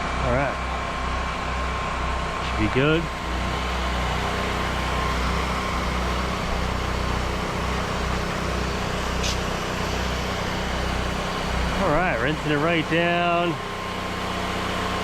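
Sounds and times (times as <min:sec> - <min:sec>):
pressure washer engine running: 0:00.0 - 0:15.0
water jet hissing: 0:03.0 - 0:14.6.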